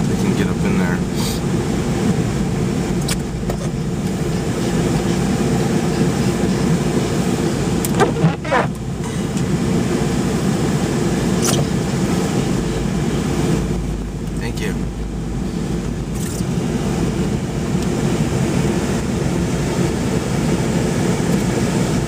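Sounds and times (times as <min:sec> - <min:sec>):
car engine and road noise: 0:00.0 - 0:22.0
short squeak: 0:07.9 - 0:08.8.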